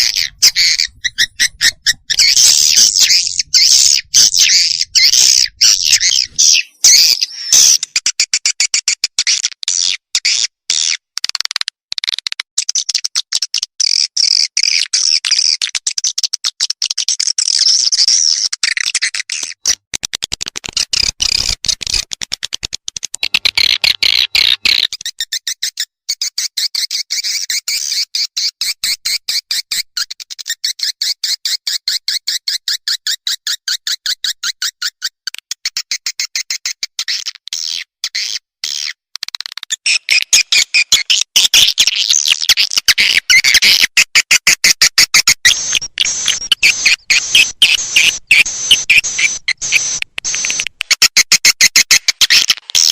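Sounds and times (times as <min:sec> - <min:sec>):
swiftlet chirps chatter: 0:45.4 - 0:50.6.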